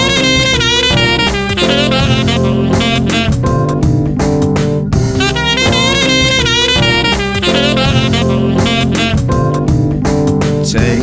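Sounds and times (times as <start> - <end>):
lead melody with vibrato: 0.0 - 3.9, 5.2 - 9.6
backing chords: 0.0 - 9.9
drums: 0.0 - 11.0.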